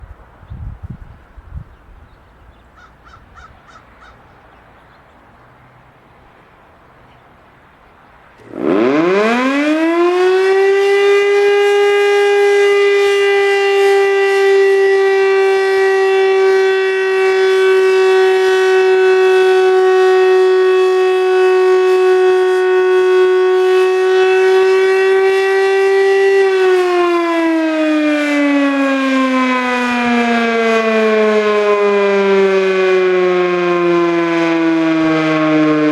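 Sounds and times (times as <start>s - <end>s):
warning siren wailing: 8.4s - 35.9s.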